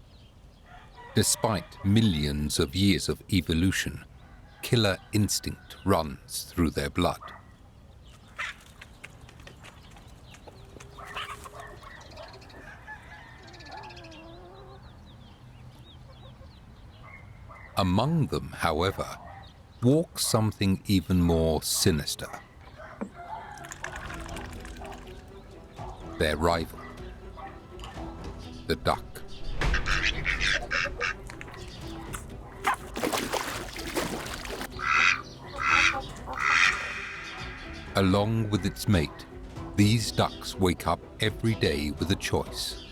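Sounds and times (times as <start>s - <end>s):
chickens calling softly: 8.2s - 15.2s, 29.7s - 39.2s
ducks quacking: 10.5s - 12.7s, 29.7s - 38.0s
water sloshing and splashing: 23.5s - 25.4s, 29.9s - 37.0s.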